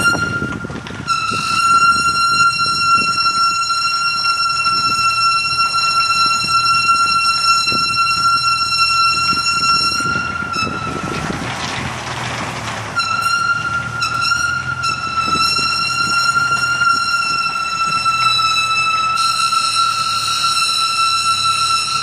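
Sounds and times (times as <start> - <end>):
high-pitched brake squeal: 0.0 - 11.5, 12.9 - 22.0
low rolling rumble: 0.0 - 22.0.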